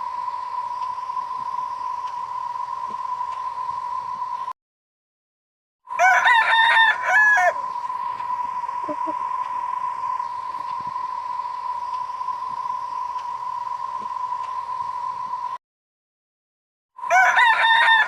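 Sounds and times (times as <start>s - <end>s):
steady high beep tone: 0.0s - 4.6s, 7.6s - 15.6s
rooster crowing: 5.9s - 9.4s, 17.0s - 18.0s.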